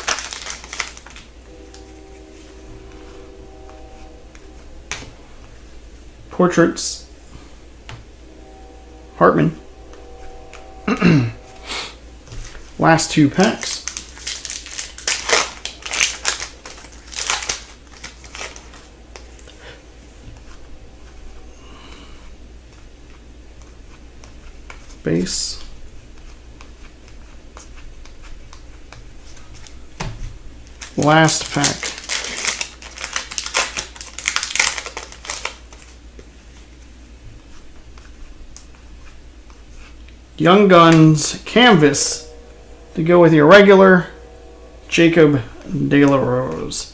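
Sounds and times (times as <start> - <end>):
foil wrapper tearing and crinkling: 0.0 - 1.3, 13.6 - 18.8, 30.8 - 35.9
handling of cards: 0.0 - 2.0, 12.3 - 19.5, 30.8 - 36.8.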